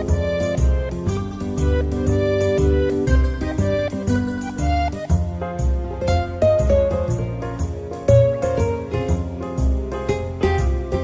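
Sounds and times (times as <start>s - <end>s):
instrumental background music: 0.0s - 11.0s.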